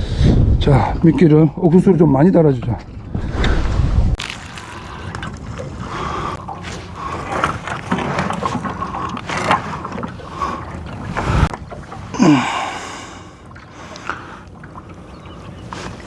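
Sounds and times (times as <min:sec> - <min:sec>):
wind noise on microphone: 0:00.0 - 0:01.7, 0:02.6 - 0:04.2, 0:11.0 - 0:11.8.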